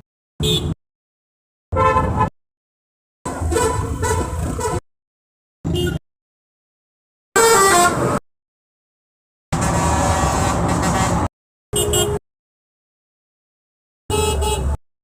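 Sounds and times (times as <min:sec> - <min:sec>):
vehicle horns: 0:00.4 - 0:00.8, 0:01.7 - 0:02.3, 0:03.3 - 0:04.8, 0:05.7 - 0:06.0, 0:07.4 - 0:08.2, 0:09.6 - 0:12.2, 0:14.1 - 0:14.8.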